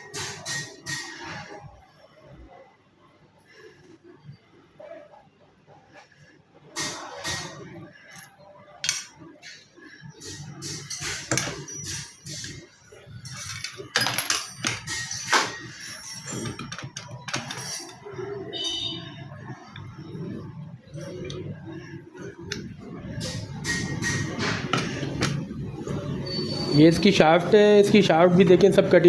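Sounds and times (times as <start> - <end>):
metal tools scraping and knocking: 6.8 - 18.4, 23.1 - 25.7.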